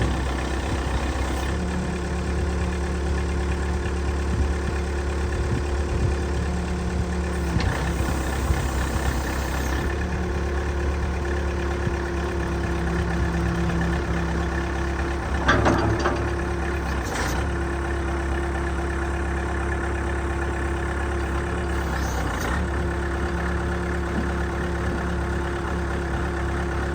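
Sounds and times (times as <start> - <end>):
backhoe engine running: 0.0 - 26.9
metal clank: 14.5 - 17.5.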